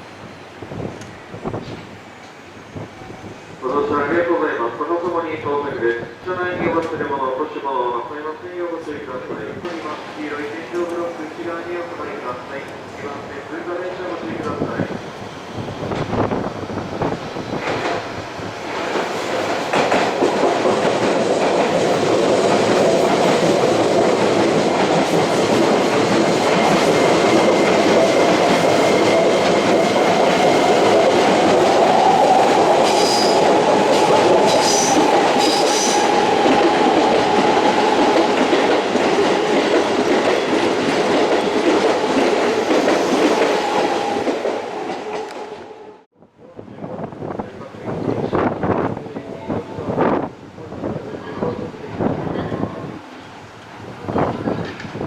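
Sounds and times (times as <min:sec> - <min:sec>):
wind buffeting microphone: 0:00.1 - 0:03.6, 0:14.3 - 0:45.4, 0:46.4 - 0:55.0
train humming tone: 0:04.6 - 0:46.1
train wheels clattering over rail joints: 0:17.0 - 0:31.8.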